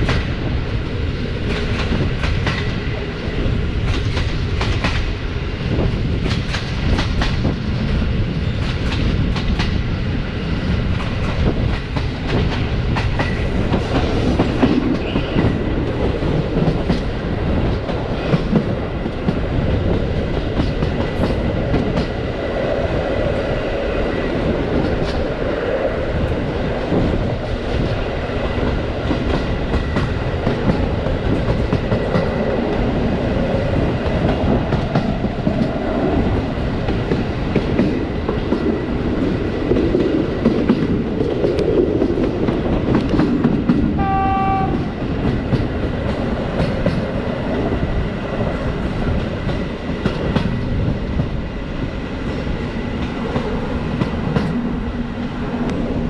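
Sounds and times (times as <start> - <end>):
clickety-clack over rail joints: 0.0 - 56.0
train wheels rumbling on rail: 0.0 - 56.0
train horn: 44.0 - 45.0.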